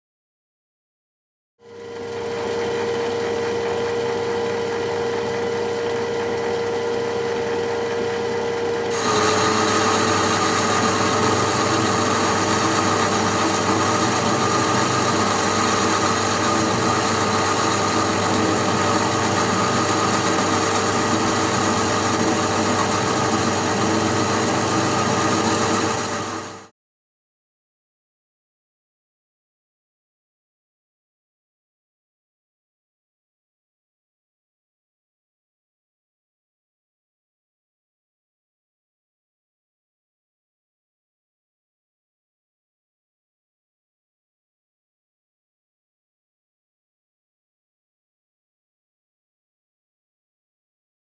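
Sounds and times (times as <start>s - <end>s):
model engine whining: 8.9s - 26.7s.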